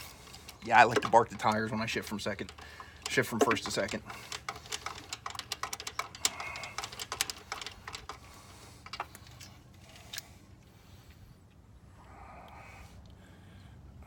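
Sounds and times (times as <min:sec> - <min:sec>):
light metallic clicks of tools: 0:00.0 - 0:10.5.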